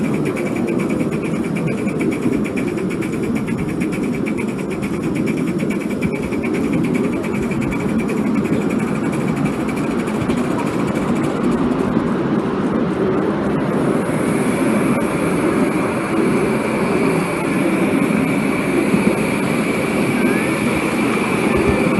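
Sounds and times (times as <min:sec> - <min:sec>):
high steam hiss: 0:00.0 - 0:11.3, 0:13.7 - 0:21.9
fast fine ticking: 0:00.0 - 0:12.0
steam locomotive rumbling: 0:00.0 - 0:21.9.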